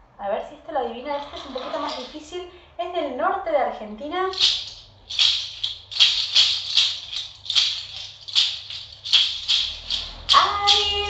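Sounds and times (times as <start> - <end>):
hoof rattle shaken: 1.1 - 2.4, 4.2 - 11.0
person singing melody: 10.3 - 11.0.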